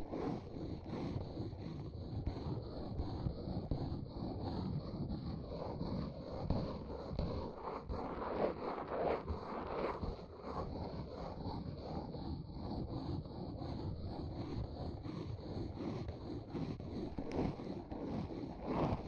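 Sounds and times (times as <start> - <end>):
close scratching and rustling: 13.4 - 19.0.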